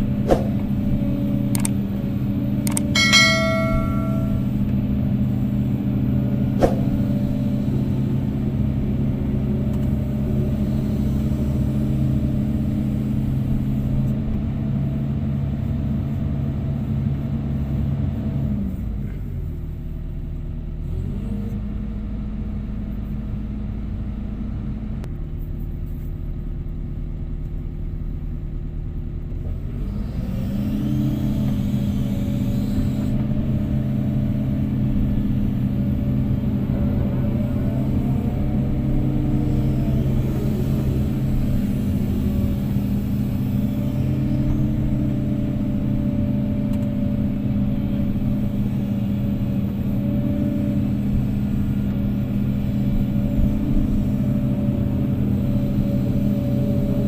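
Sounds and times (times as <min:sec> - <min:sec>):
heavy diesel engine running: 0:31.6 - 0:57.0.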